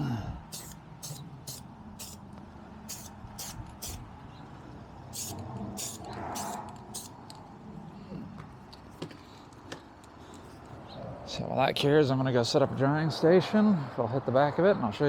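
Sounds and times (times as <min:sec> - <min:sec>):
aerosol spray can hissing: 0:00.5 - 0:02.2, 0:02.9 - 0:04.0, 0:05.2 - 0:07.2.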